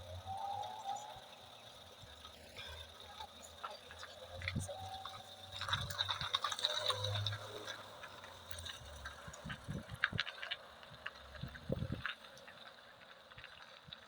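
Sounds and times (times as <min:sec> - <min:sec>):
ship engine humming: 0:00.0 - 0:05.9.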